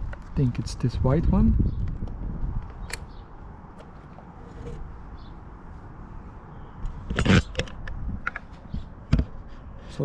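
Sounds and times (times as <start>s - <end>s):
sharp plastic click: 1.8s - 3.2s.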